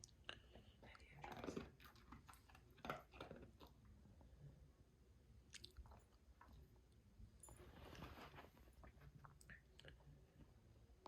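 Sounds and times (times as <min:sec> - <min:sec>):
dog chewing dry kibble: 0:01.2 - 0:03.9.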